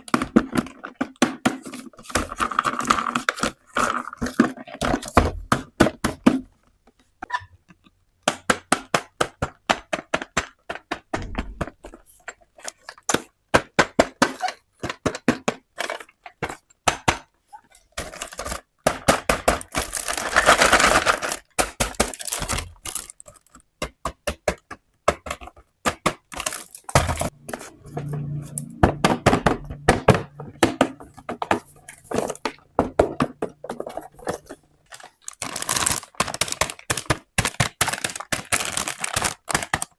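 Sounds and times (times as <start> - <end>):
toy pieces clicking and clinking: 33.8 - 39.8.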